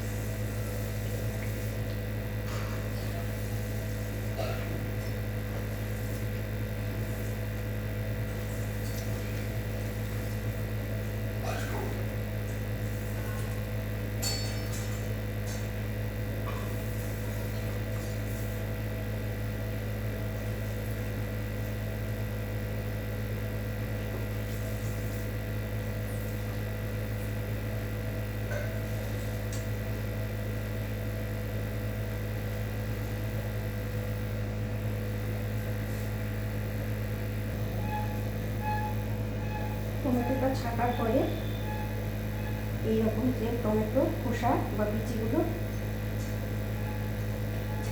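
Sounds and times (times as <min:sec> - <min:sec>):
low hum: 0:35.5 - 0:47.9.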